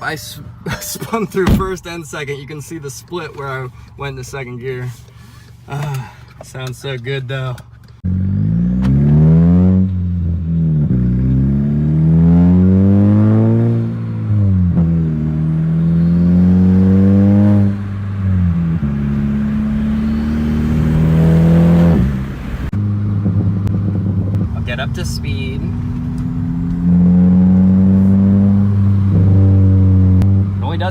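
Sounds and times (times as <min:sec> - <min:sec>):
car engine accelerating: 0:08.0 - 0:30.9.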